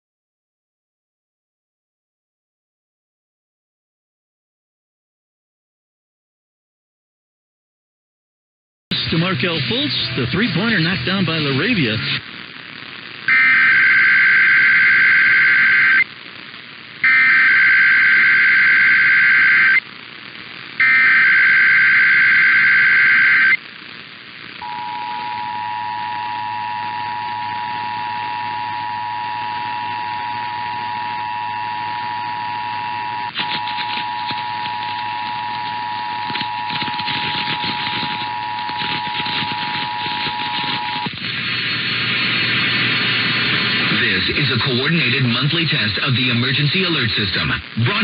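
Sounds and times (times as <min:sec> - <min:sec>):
warbling digital data signal: 0:24.6 - 0:41.1.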